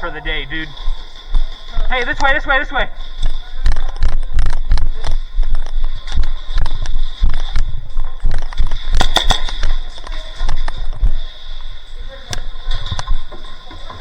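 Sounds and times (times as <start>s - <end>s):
airsoft gunfire pops: 8.6s - 9.8s.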